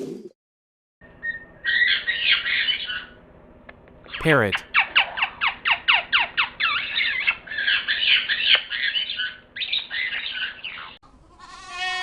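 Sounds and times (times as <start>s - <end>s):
short bleat: 11.4s - 12.0s.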